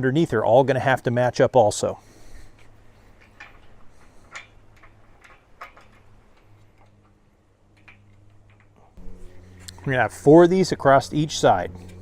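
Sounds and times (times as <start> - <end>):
small clicks of bolts being fitted: 2.6 - 8.8.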